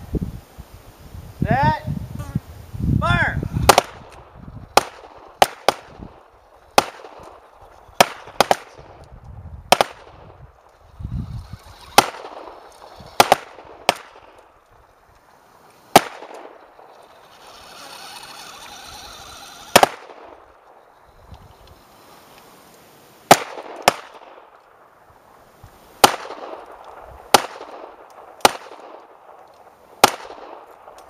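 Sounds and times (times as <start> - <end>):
faint steady noise: 0.0 - 31.0
gunshots with echo: 3.6 - 4.1, 4.7 - 6.0, 6.7 - 7.4, 8.0 - 8.9, 9.7 - 10.3, 11.9 - 14.4, 15.9 - 16.9, 19.7 - 20.4.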